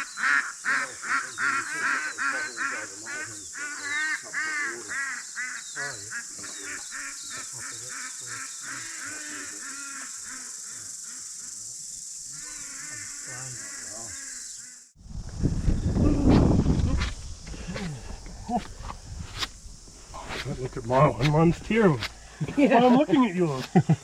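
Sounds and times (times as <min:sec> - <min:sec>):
birds calling in short calls: 0:00.0 - 0:11.6
high-pitched insect drone: 0:00.0 - 0:24.0.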